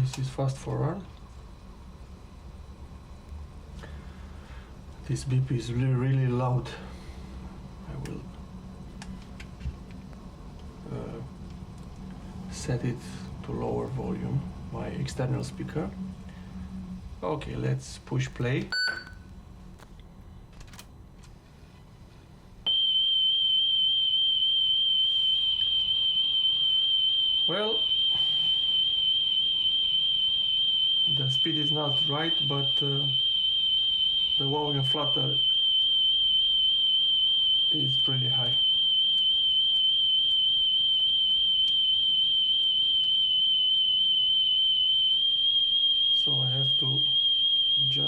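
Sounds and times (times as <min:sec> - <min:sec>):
wavering high test tone: 0:18.7 - 0:19.2, 0:23.4 - 0:48.0.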